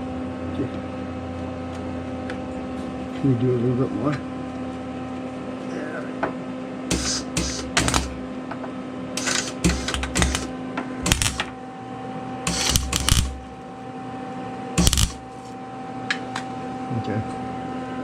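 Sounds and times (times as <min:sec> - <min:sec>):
steady low hum: 0:06.6 - 0:16.9
welder crackling bursts: 0:06.9 - 0:08.2, 0:09.2 - 0:11.5, 0:12.5 - 0:13.5, 0:14.8 - 0:15.3.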